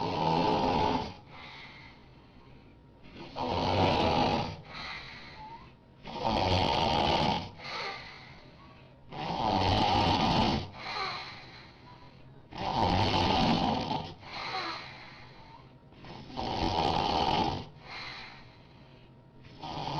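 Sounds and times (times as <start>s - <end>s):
loud snoring: 0.0s - 1.3s, 3.1s - 4.9s, 6.0s - 8.1s, 9.1s - 11.6s, 12.5s - 14.9s, 15.5s - 18.1s, 19.5s - 19.9s
soft breath: 1.1s - 3.4s, 4.6s - 5.8s, 7.5s - 9.1s, 10.6s - 12.5s, 14.1s - 16.4s, 17.7s - 19.6s.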